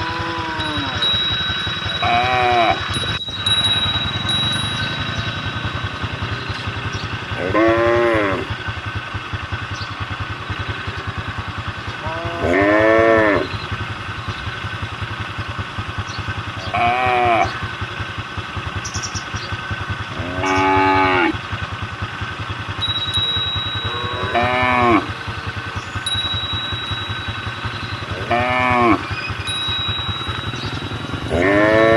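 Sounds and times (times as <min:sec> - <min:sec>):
cattle mooing: 0:00.0 - 0:01.2, 0:01.9 - 0:02.9, 0:07.2 - 0:08.6, 0:12.0 - 0:13.6, 0:16.6 - 0:17.6, 0:20.1 - 0:21.4, 0:23.8 - 0:25.3, 0:28.0 - 0:29.2, 0:30.8 - 0:31.9
low engine drone: 0:00.0 - 0:31.9.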